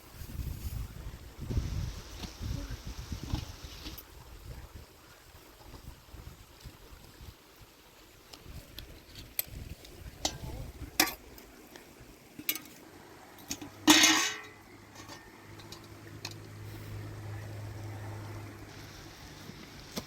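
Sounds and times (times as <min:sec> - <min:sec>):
utensils clinking against dishes: 0:13.5 - 0:15.8
clattering scrape: 0:13.8 - 0:15.8.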